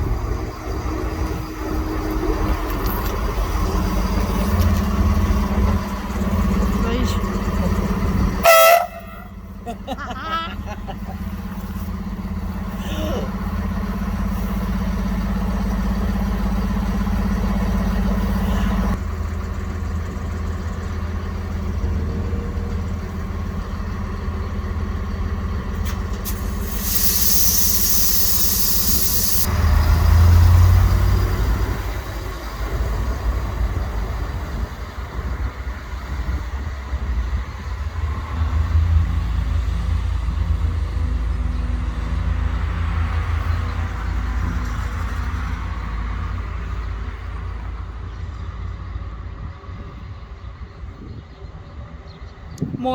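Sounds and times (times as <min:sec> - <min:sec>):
locomotive engine running: 0:00.0 - 0:52.7
compressed air hiss: 0:25.9 - 0:29.5.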